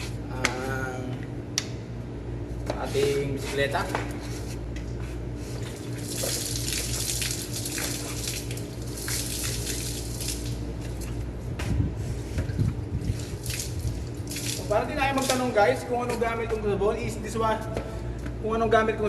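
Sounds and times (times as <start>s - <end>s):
water splashing onto bicycle: 5.9s - 10.6s, 13.1s - 15.5s.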